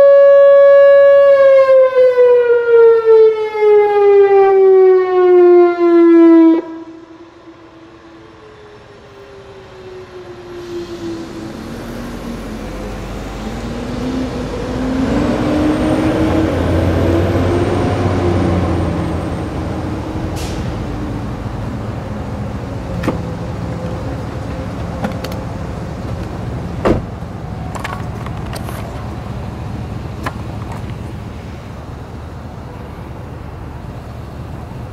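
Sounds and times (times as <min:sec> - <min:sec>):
tornado siren falling tone: 0:00.0 - 0:26.1
vehicle passing: 0:09.8 - 0:32.7.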